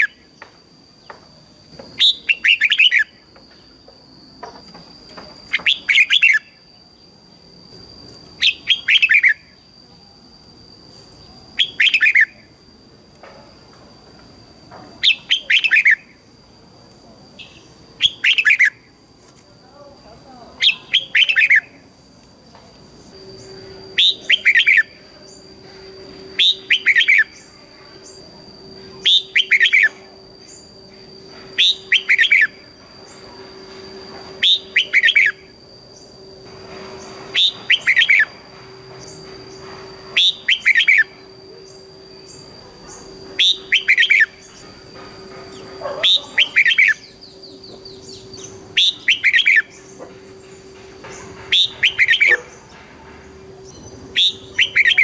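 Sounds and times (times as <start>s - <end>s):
bulbul whistled song: 1.8s - 3.8s, 5.2s - 7.0s, 7.7s - 12.6s, 15.0s - 16.3s, 17.4s - 19.0s, 20.6s - 21.9s, 23.1s - 52.7s, 53.6s - 55.0s.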